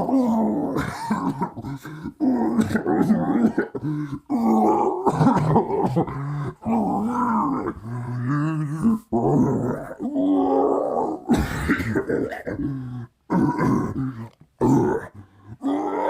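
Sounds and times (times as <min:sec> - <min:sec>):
man coughing and wheezing: 0:00.0 - 0:06.8, 0:11.2 - 0:15.6.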